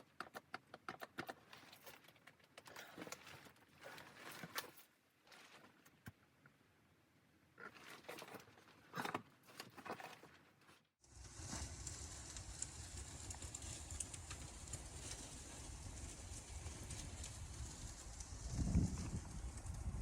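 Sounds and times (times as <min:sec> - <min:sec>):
soft crunches and rustles: 0:07.6 - 0:19.4
snowstorm wind: 0:11.0 - 0:20.0.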